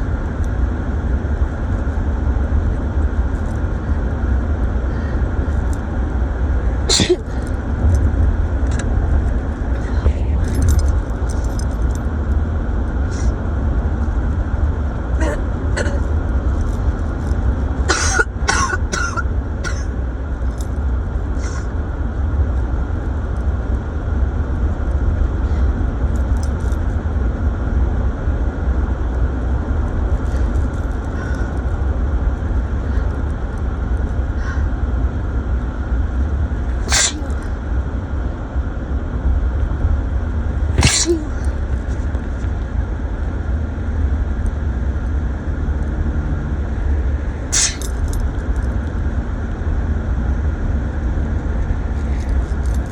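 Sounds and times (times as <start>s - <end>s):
car road rumble: 0.0s - 52.9s
sharp bursts of breath: 47.5s - 48.0s.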